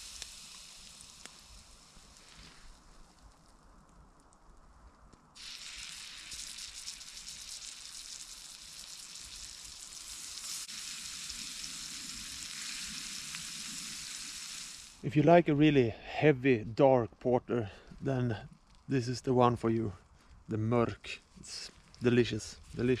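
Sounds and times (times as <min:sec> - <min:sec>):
patties sizzling in a pan: 0:00.0 - 0:02.8, 0:05.4 - 0:15.1.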